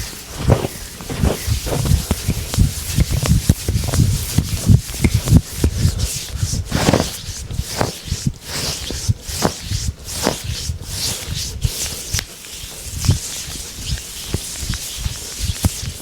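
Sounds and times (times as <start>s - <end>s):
soft rapid thumps: 0.0s - 8.8s
hands swishing over skin: 0.0s - 16.0s.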